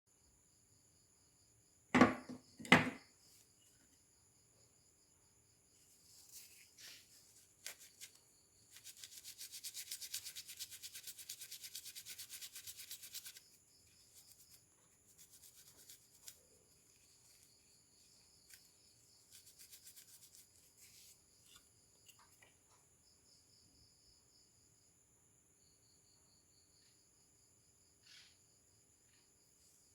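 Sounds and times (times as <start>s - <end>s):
crickets chirring: 0.2s - 29.9s.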